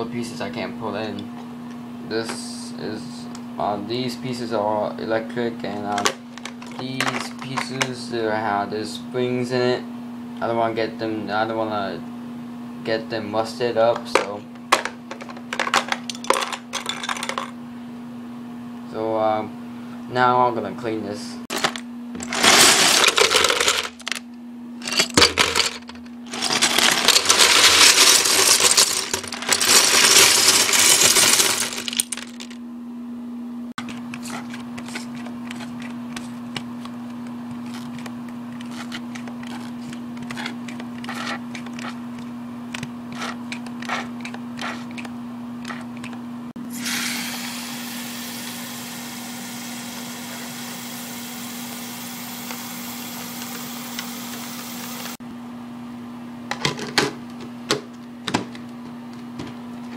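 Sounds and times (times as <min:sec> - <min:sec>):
constant low hum: 0:00.0 - 0:46.8, 0:47.5 - 0:59.9
plastic bricks clattering: 0:21.5 - 0:24.2, 0:24.8 - 0:32.6
single pieces dropping clicks: 0:24.8 - 0:32.6.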